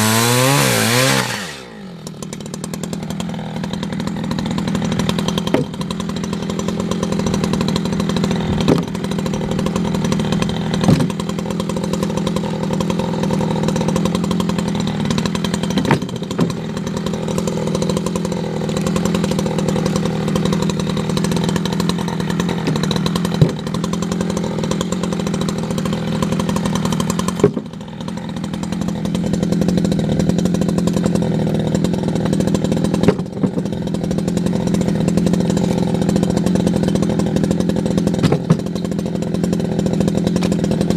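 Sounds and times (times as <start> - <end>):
chainsaw running: 0.0 - 40.9
sharp knocks: 5.4 - 5.8, 8.6 - 9.0, 10.8 - 11.2, 15.7 - 16.6, 22.6 - 23.7, 38.2 - 38.7.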